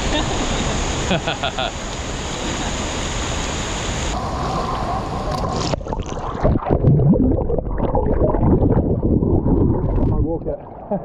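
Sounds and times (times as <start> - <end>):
waterfall rushing: 0.0 - 5.5
water sloshing and gurgling: 0.0 - 11.0.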